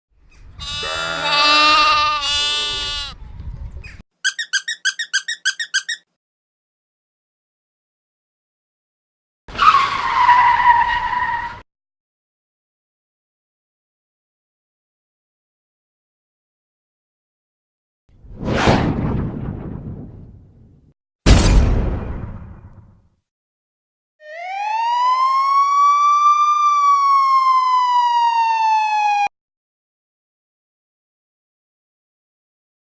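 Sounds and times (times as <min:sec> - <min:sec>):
squeaky cartoon sound bending down: 0:04.2 - 0:06.0
rapid high chirps: 0:04.3 - 0:06.0
siren-like wail: 0:24.2 - 0:29.3.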